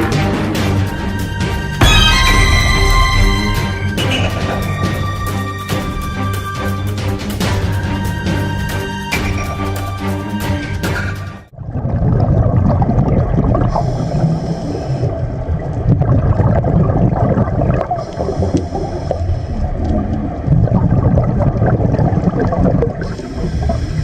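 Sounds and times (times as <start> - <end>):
water churning and gurgling: 0.0 - 24.0
heavy low rumble: 0.4 - 8.4.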